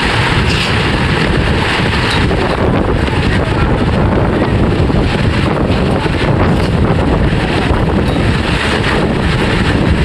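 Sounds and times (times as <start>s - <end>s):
diesel engine rumbling: 0.0s - 10.0s
wind buffeting microphone: 0.0s - 10.0s.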